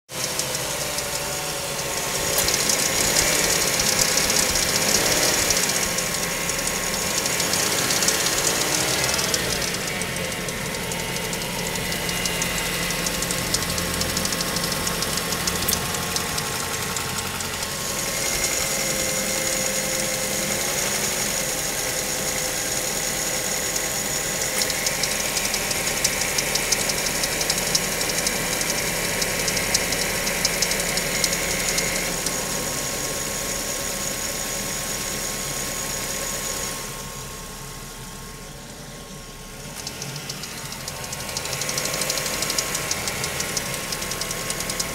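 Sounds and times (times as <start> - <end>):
car engine drone: 0.1 - 44.9
fast metallic ticking: 0.2 - 22.2, 23.8 - 32.4, 39.6 - 44.9.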